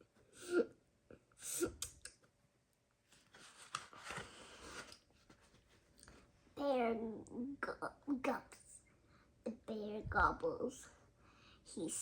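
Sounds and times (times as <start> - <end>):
paper page turning: 3.1 - 6.2.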